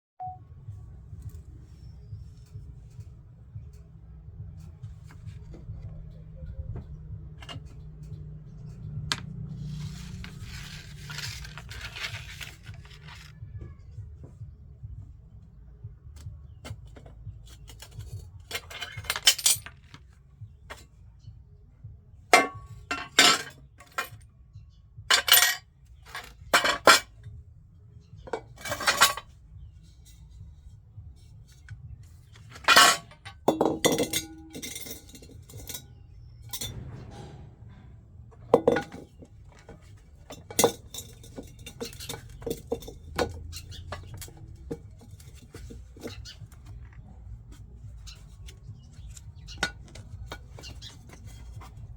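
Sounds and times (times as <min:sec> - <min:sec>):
glass shards clinking and rattling: 0:10.0 - 0:13.3, 0:17.6 - 0:20.0, 0:22.4 - 0:24.2, 0:25.1 - 0:27.1, 0:28.3 - 0:29.3, 0:32.4 - 0:36.8, 0:38.5 - 0:47.0.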